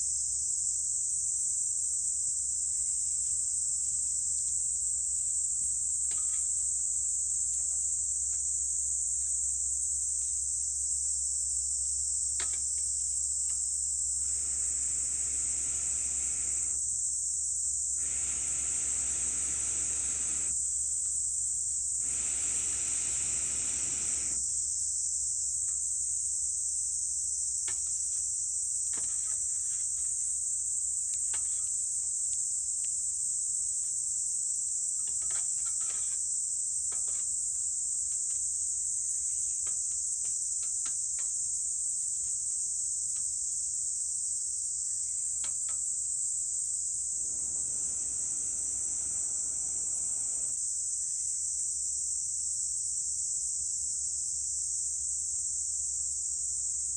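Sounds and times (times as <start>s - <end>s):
high-pitched insect chorus: 0.0s - 56.9s
burning wood crackles: 14.2s - 16.8s, 18.0s - 21.0s, 22.0s - 24.4s
air blown through pipe into fire: 14.2s - 16.9s, 18.0s - 20.6s, 22.0s - 24.4s, 47.1s - 50.6s.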